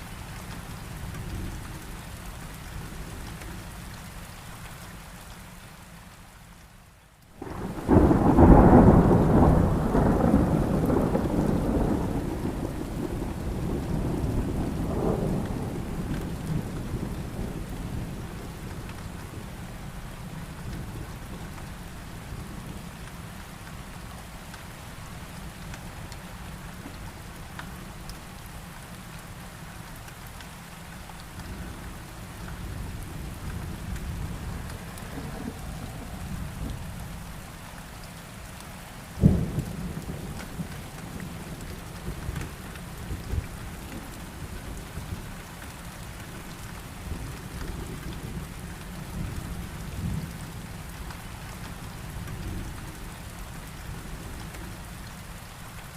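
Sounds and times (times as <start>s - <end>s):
heavy rain: 0.0s - 55.9s
sharp thunderclap: 7.4s - 17.1s
low rumbling thunder: 7.4s - 22.8s, 31.5s - 37.4s, 39.2s - 45.3s.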